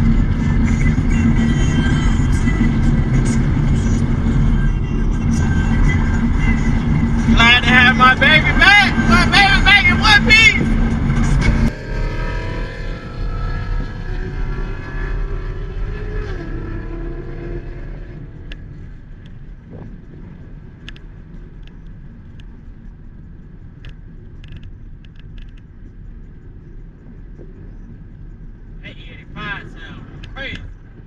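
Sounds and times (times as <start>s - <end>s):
car engine winding down: 0.0s - 18.6s
engine and road rumble: 0.0s - 31.0s.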